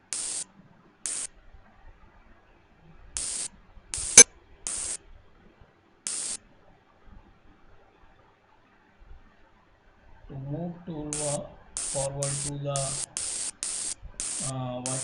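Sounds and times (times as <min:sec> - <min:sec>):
short bursts of hiss: 0:00.0 - 0:00.4, 0:01.1 - 0:01.3, 0:03.2 - 0:05.0, 0:06.1 - 0:06.4, 0:11.1 - 0:15.0.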